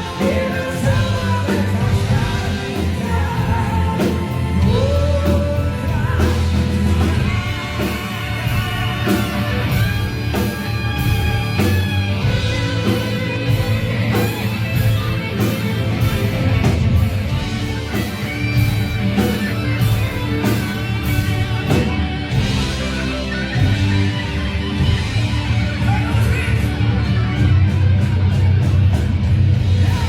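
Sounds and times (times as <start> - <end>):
bass guitar: 0.0 - 30.0
electric guitar: 0.0 - 30.0
steady drum beat: 0.0 - 30.0.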